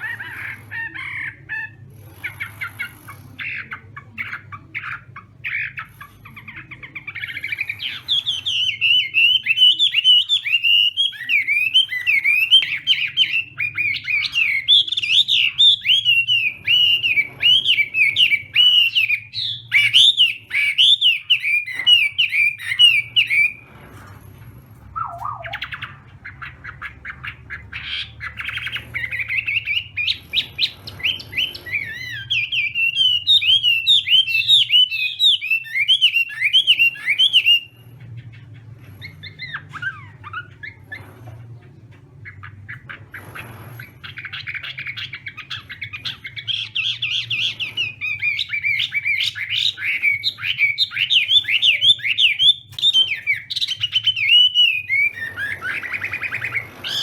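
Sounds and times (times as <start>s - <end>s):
bird singing whistled phrases: 24.9s - 25.9s.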